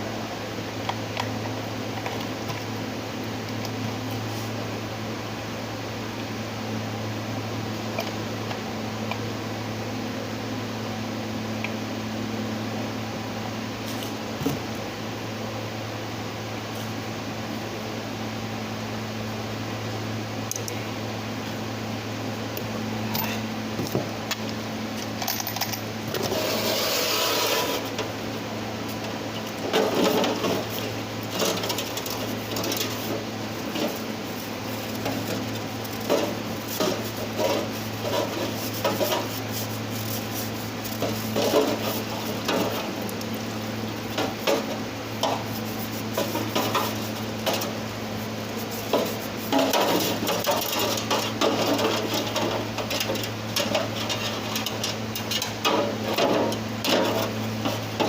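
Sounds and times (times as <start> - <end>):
steady low hum: 0.0 - 58.0
scraping and rubbing metal parts: 25.3 - 28.0, 29.7 - 43.0, 44.1 - 58.0.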